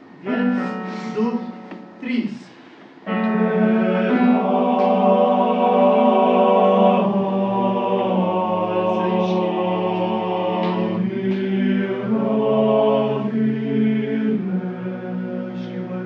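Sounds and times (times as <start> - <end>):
choir singing a cappella: 3.1 - 16.0.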